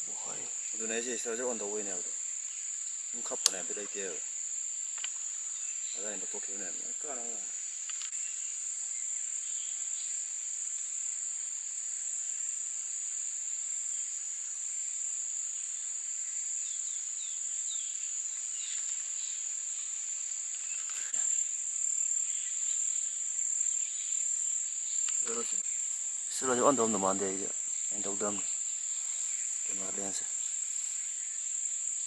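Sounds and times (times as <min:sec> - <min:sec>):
insects droning: 0:00.0 - 0:32.0.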